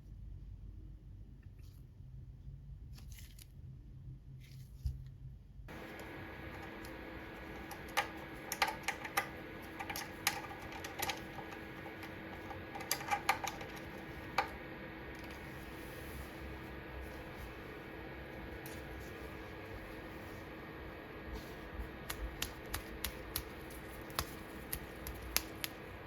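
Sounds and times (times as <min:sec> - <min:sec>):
light clicks and taps: 0:05.7 - 0:14.6, 0:22.1 - 0:25.8
low hum: 0:05.7 - 0:26.0.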